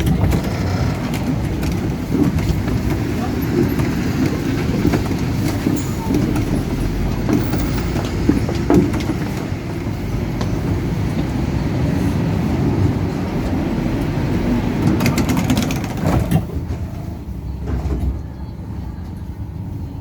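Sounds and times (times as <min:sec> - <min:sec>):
tram rumbling on rails: 0:00.0 - 0:20.0
sharp clicks and rattles: 0:14.0 - 0:16.5.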